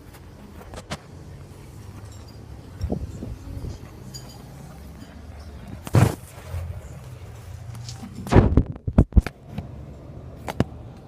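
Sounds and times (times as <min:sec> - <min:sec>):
heavy thump: 0:05.8 - 0:06.3.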